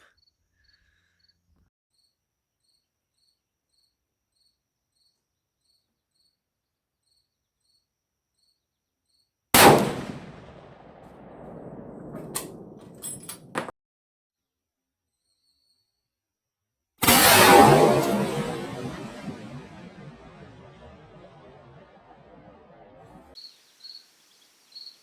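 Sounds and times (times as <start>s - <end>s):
faint cricket chirps: 0.0s - 9.5s, 15.1s - 16.2s, 23.4s - 25.0s
loud rifle shot: 9.6s - 13.7s, 17.0s - 23.3s.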